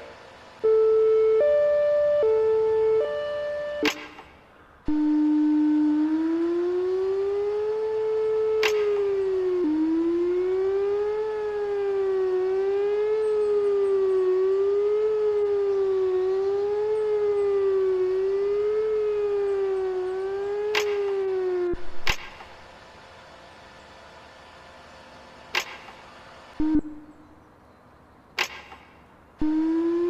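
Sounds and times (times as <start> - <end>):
wavering warning siren: 0.0 - 25.4, 26.5 - 27.8, 29.4 - 30.0
sharp clicks: 3.8 - 4.5, 8.6 - 9.2, 20.7 - 21.3, 21.9 - 22.6, 25.5 - 26.1, 28.4 - 29.1.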